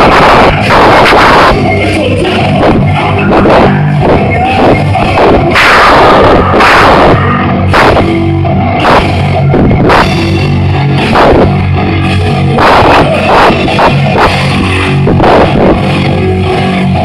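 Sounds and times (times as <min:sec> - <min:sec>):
distorted metal guitars and bass: 0:00.0 - 0:17.0
drum kit: 0:00.0 - 0:17.0.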